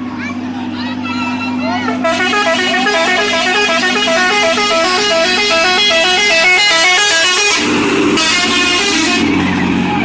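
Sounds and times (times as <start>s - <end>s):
musical horn playing fast tune: 1.9s - 9.4s.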